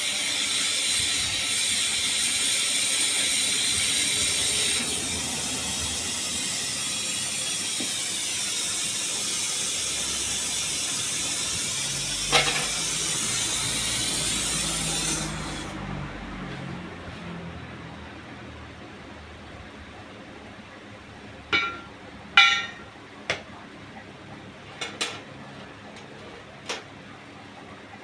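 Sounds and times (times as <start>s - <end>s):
torch flame hissing: 0.0s - 15.8s.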